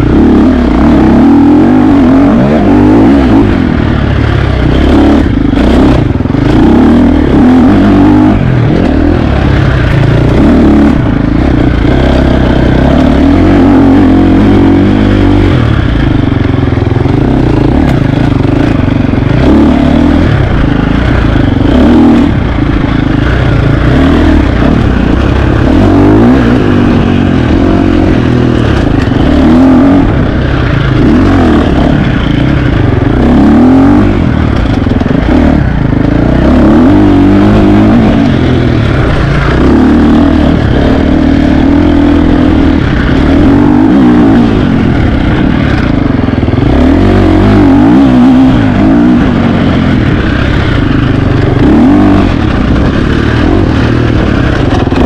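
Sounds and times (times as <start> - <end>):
dirt bike engine revving: 0.0 - 55.0.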